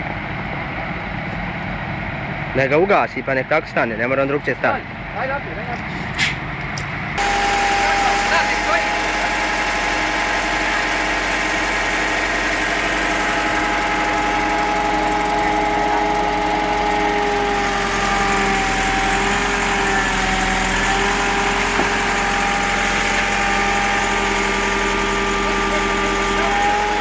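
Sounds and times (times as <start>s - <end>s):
heavy machine engine running: 0.0s - 27.0s.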